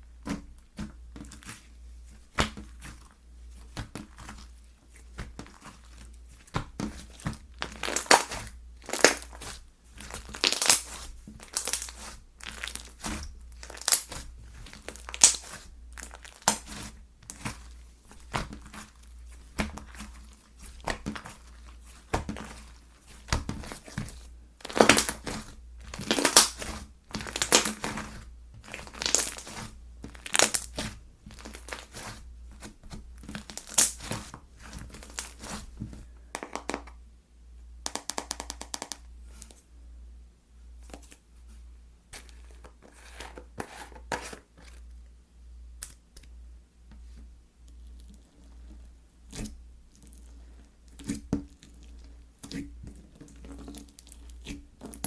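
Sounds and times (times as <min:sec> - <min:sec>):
slime crackling and crinkling: 0:00.3 - 0:35.8, 0:47.7 - 0:55.0.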